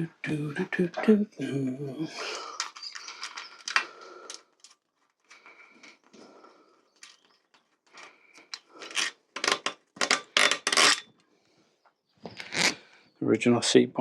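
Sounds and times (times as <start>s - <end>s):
metal bicycle parts clinking: 2.6s - 4.8s, 7.0s - 11.2s.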